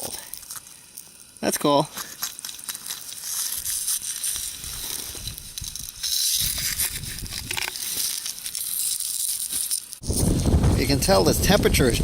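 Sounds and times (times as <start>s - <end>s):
crunching icy slush: 1.4s - 10.0s
low thuds: 10.0s - 11.8s.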